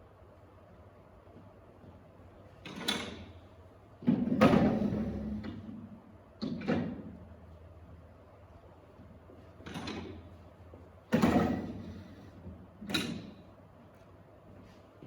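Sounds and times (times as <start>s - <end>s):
chairs clattering down: 11.1s - 12.0s.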